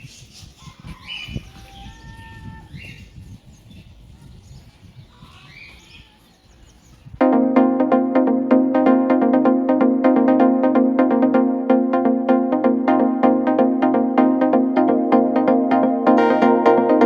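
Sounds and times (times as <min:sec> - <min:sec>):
small birds chirping: 0:02.7 - 0:07.2
loud electronic music: 0:07.2 - 0:17.0.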